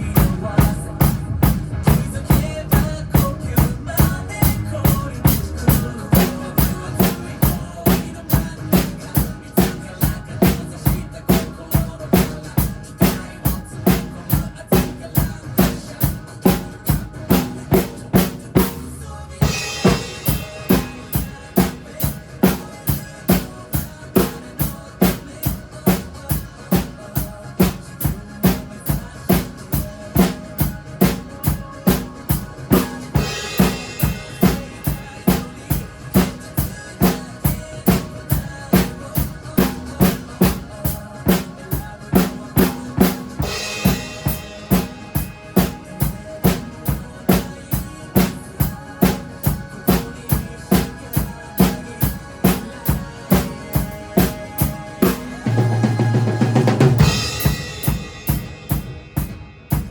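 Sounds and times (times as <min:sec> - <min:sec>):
bass drum and snare beat: 0:00.0 - 0:59.9
pop backing track: 0:00.0 - 0:59.9
cymbal crash: 0:57.0 - 0:59.9.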